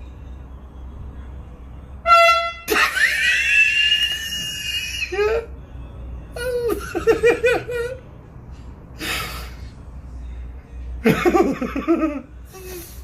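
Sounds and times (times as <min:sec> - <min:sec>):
person laughing: 0:06.4 - 0:08.0, 0:11.0 - 0:12.9.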